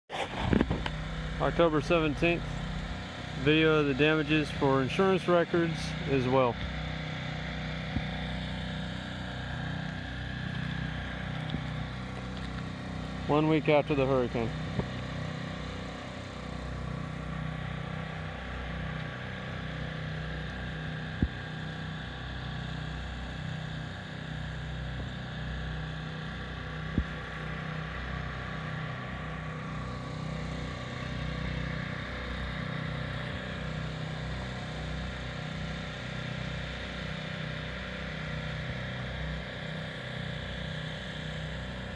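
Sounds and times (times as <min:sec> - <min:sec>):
engine running steadily: 0:00.1 - 0:41.9.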